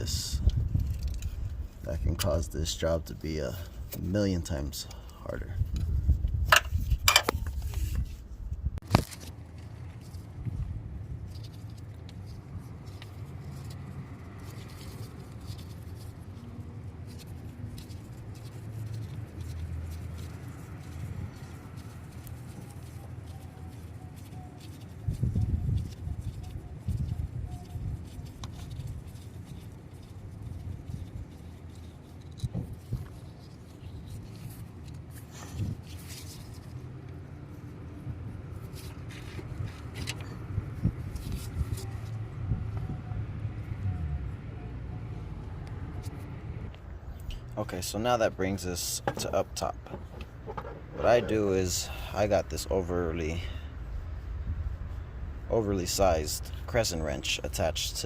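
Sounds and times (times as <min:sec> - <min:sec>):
steady low rumble: 0:00.0 - 0:23.0
wrench clicking and scraping: 0:06.5 - 0:07.8.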